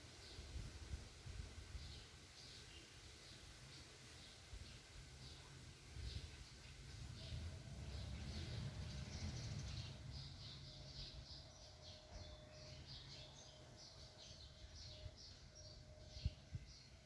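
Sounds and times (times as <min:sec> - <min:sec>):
small birds chirping: 0:01.8 - 0:17.0
low rumble: 0:07.2 - 0:11.2.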